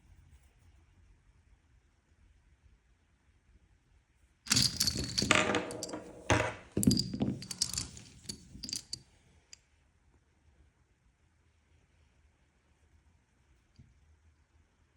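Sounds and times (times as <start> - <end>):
cartridges clattering together: 4.5 - 9.0.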